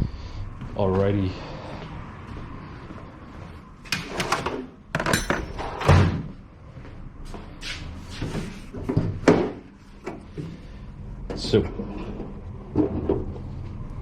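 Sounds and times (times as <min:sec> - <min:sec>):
tools knocking and clattering: 0:04.2 - 0:06.0.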